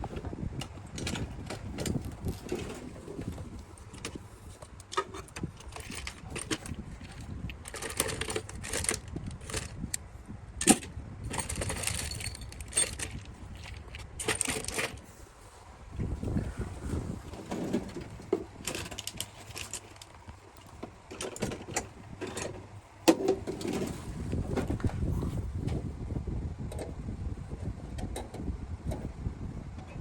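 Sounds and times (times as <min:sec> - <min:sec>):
metal parts clinking: 0:04.8 - 0:10.0, 0:10.6 - 0:15.0, 0:18.6 - 0:22.6.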